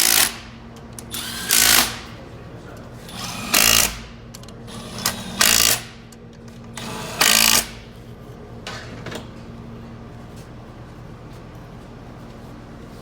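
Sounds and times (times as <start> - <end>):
handheld power tool running: 0.0 - 2.0, 3.1 - 4.1, 4.7 - 6.0, 6.8 - 7.8.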